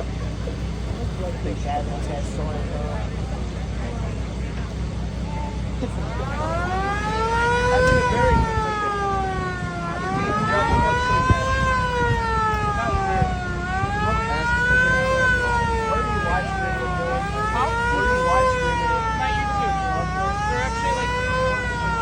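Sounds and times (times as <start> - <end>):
mini siren wailing: 6.0 - 22.0.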